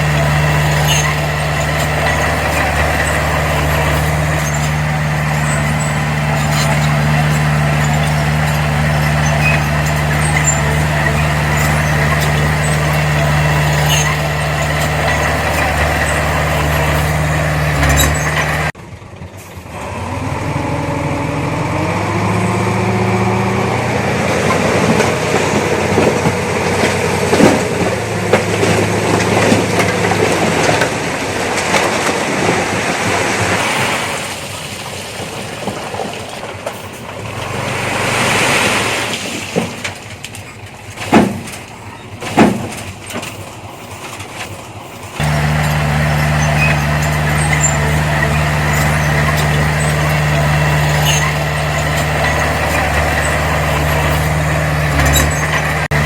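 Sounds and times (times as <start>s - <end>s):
engine revving under load: 0.0s - 18.8s, 19.7s - 30.9s, 37.2s - 39.5s, 45.2s - 56.0s
diesel engine drone: 0.0s - 35.2s, 35.9s - 56.0s
knocks and clatter: 24.5s - 32.7s, 39.2s - 56.0s.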